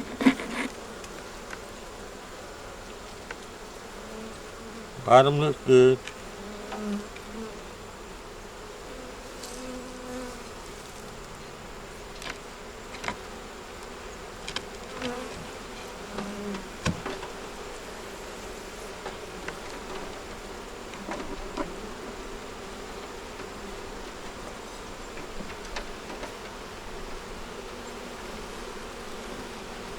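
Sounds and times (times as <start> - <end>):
honey bees buzzing: 0.0 - 29.9
sharp clicks and knocks: 16.2 - 17.4.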